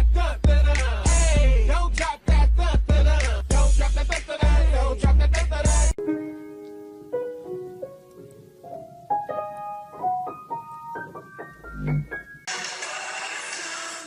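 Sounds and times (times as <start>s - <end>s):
keyboard notes climbing: 6.0s - 12.5s.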